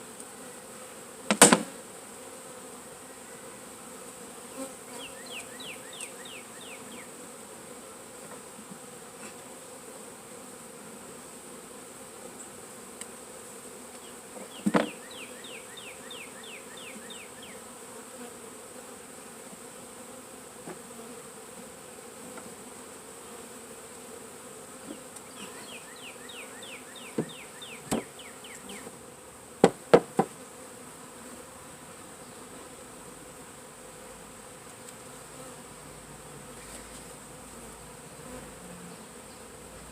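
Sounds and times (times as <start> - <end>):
honeybees buzzing: 0.0 - 39.9
sharp knocks: 1.3 - 1.7, 29.6 - 30.4.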